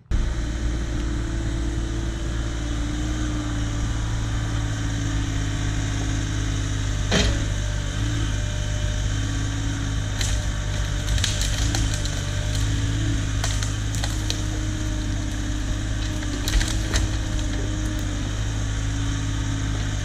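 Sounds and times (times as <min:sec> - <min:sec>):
excavator engine running: 0:00.0 - 0:20.0
wood cracking: 0:08.4 - 0:20.0.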